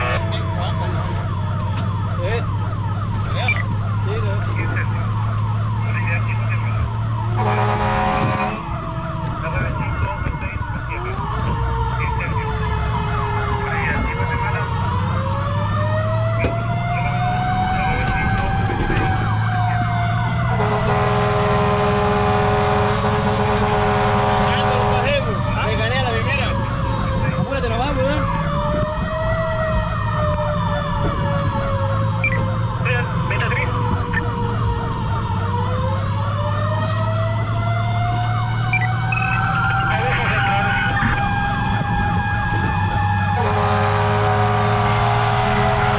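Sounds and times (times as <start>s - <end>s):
siren wail: 0.0s - 45.9s
siren yelp: 0.0s - 45.9s
truck engine droning: 0.0s - 45.9s
horn blast: 7.4s - 8.7s, 20.5s - 25.3s, 43.3s - 45.9s.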